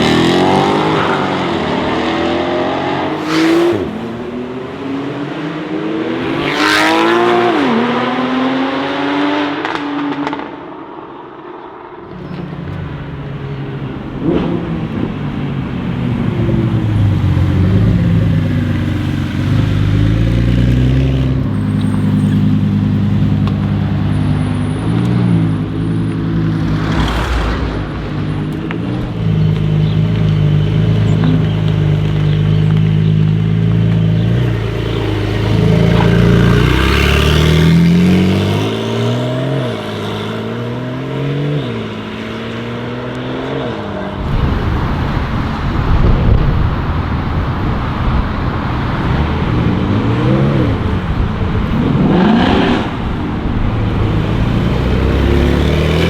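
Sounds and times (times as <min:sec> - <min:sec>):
car engine accelerating: 0:00.0 - 0:10.4, 0:12.1 - 0:56.0
noisy rush: 0:24.6 - 0:31.6.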